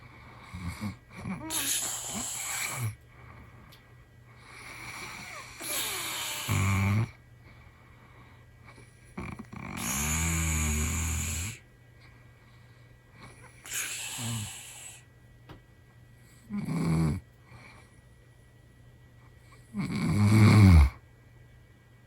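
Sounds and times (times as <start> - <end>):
man snoring: 0.4 - 3.0, 4.5 - 7.2, 9.2 - 11.6, 13.6 - 15.0, 16.5 - 17.2, 19.8 - 21.0.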